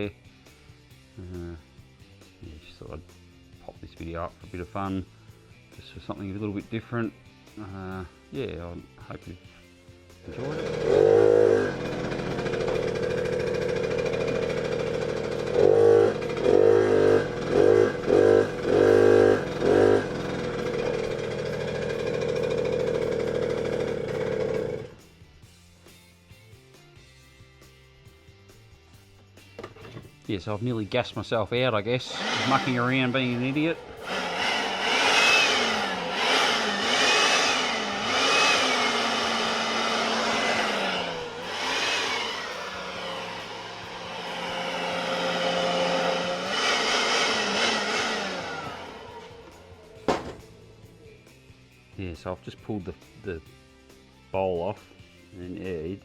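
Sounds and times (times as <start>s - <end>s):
two-stroke motorcycle engine revving: 10.2s - 25.0s, 31.9s - 51.4s.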